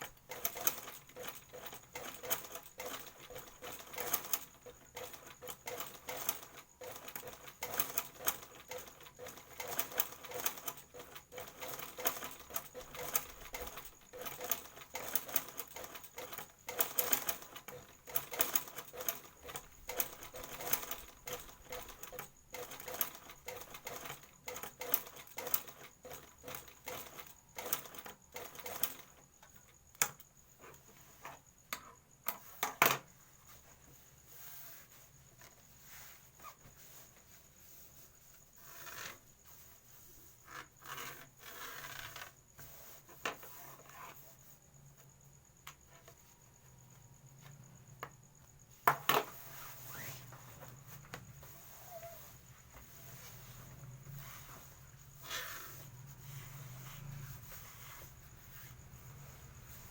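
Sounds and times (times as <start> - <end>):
sewing machine stitching: 0.0 - 29.1.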